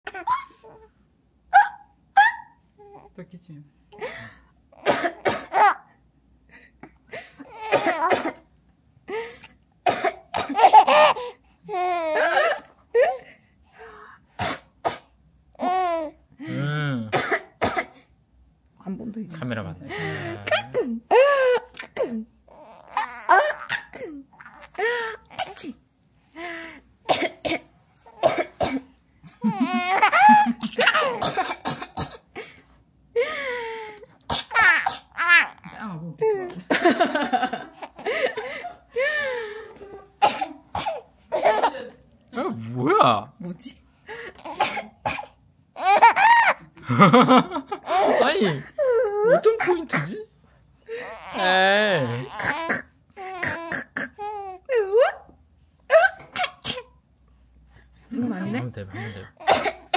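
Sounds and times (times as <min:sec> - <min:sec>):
woman coughing: 0:04.8 - 0:05.8, 0:07.5 - 0:08.5, 0:09.9 - 0:11.2, 0:17.2 - 0:18.0, 0:20.0 - 0:22.3, 0:23.3 - 0:24.3, 0:27.1 - 0:32.4, 0:40.2 - 0:42.0, 0:44.4 - 0:45.4, 0:49.4 - 0:50.2, 0:55.9 - 0:56.9, 0:58.7 - 0:59.9
baby laughing squeals: 0:22.6 - 0:23.8, 0:29.4 - 0:31.2, 0:34.5 - 0:35.7, 0:45.8 - 0:46.6.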